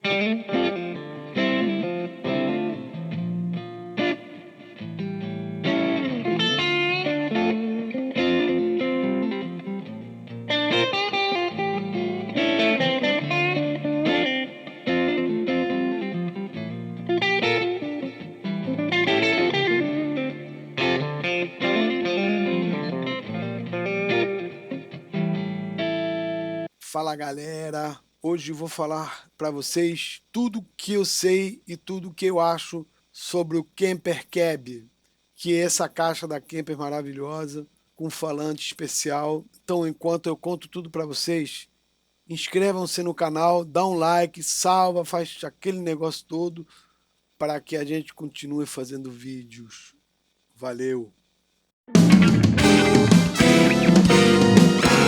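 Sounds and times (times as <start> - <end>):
electric guitar melody: 0.0 - 26.7, 51.9 - 55.0.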